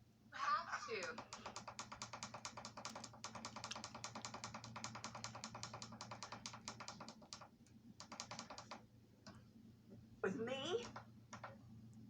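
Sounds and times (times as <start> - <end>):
rapid clicking: 1.0 - 9.4, 10.8 - 11.6.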